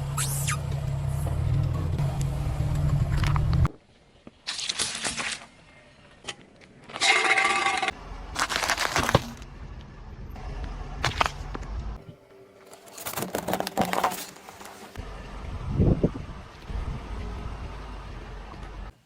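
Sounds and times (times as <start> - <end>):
car engine running: 0.0 - 3.7, 13.8 - 19.0
items crushed under car tyre: 6.9 - 9.4, 12.8 - 14.9.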